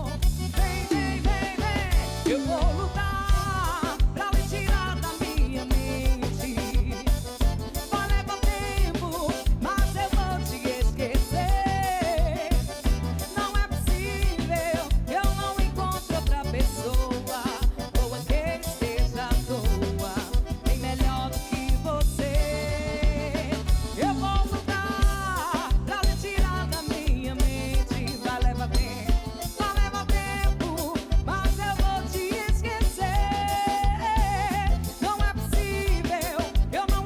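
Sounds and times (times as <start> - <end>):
drum and bass beat: 0.0 - 37.0
lead vocal singing: 0.0 - 37.0.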